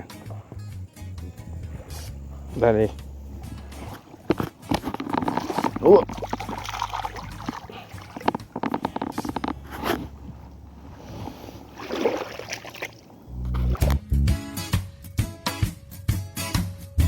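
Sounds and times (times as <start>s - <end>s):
low engine hum: 0.0s - 4.6s, 5.4s - 12.5s
clicks and knocks: 4.2s - 6.7s, 7.3s - 10.0s.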